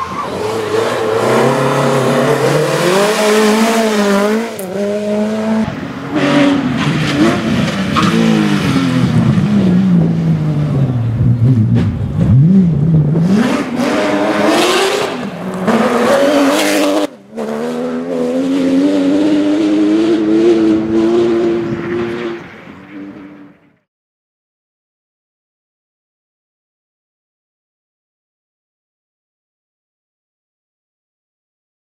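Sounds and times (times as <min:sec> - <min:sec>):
rally car engine revving: 0:00.0 - 0:23.7.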